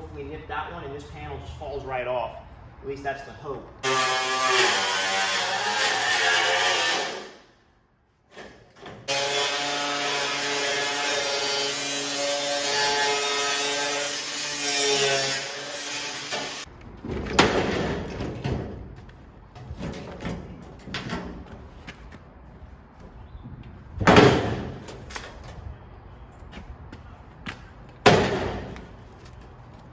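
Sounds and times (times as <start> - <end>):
angle grinder cutting metal: 3.8 - 7.3, 9.1 - 16.7.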